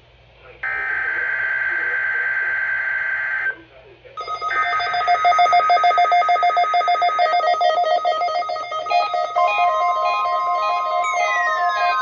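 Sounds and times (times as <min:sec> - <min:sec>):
synthesized electronic tones: 0:04.2 - 0:12.0.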